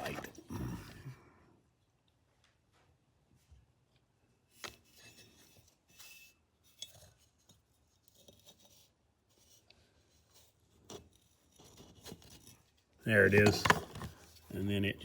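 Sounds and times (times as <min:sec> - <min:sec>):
small metal clicks and scrapes: 0:04.6 - 0:14.6.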